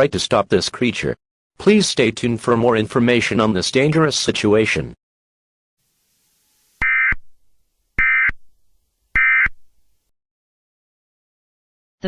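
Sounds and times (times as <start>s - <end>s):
digital data tone bursts: 6.8s - 7.2s, 8.0s - 8.4s, 9.2s - 9.6s.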